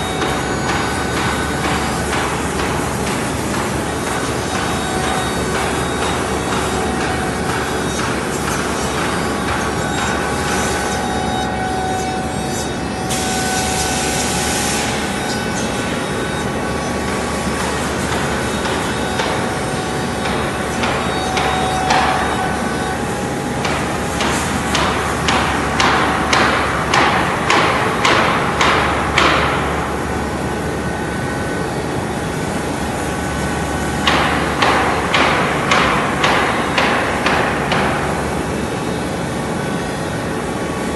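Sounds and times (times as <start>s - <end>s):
sharp hammer-like knocks: 23.6s - 29.7s, 34.0s - 38.0s.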